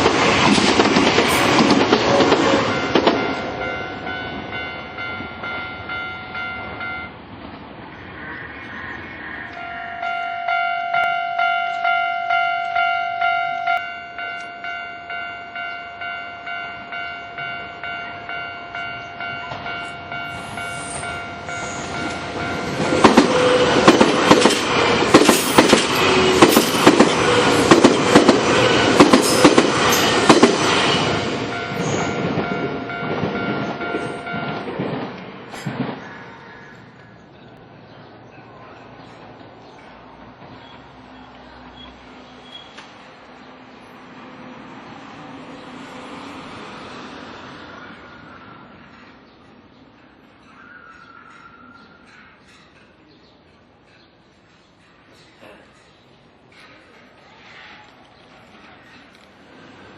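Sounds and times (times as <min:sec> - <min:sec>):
train wheels clacking over rail joints: 0:00.0 - 0:03.8, 0:22.0 - 0:36.1
level-crossing warning bell: 0:01.2 - 0:07.2, 0:09.5 - 0:24.4, 0:29.0 - 0:35.1.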